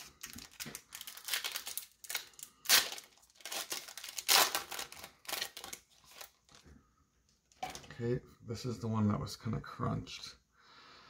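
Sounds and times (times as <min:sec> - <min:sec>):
wrapper crinkling and tearing: 0:00.0 - 0:06.6.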